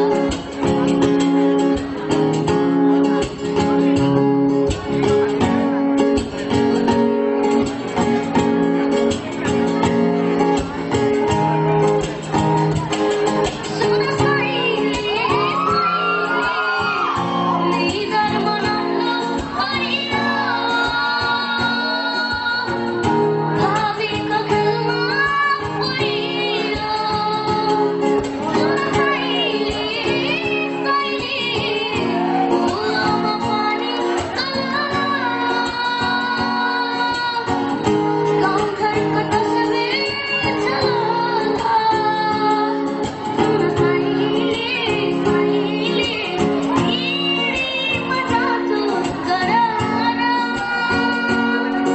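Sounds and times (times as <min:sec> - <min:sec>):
instrumental accompaniment: 0:00.0 - 0:51.9
person singing: 0:12.4 - 0:51.9.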